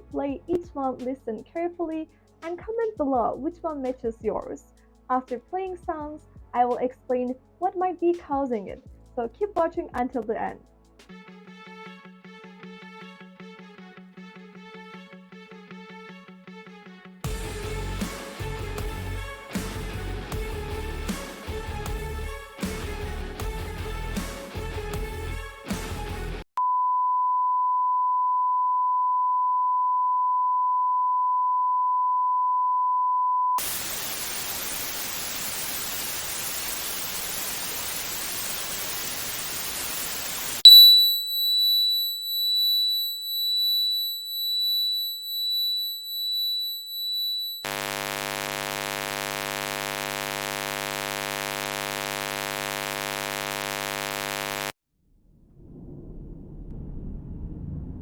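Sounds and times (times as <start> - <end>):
music: 0.0 - 26.5
pulsing high tone: 40.0 - 54.8
high-pitched pure tone ring: 40.6 - 54.8
low buzz: 40.7 - 54.8.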